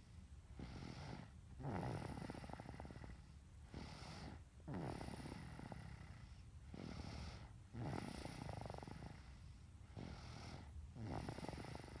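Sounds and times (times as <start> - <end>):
rattly snoring: 11.0 - 12.0.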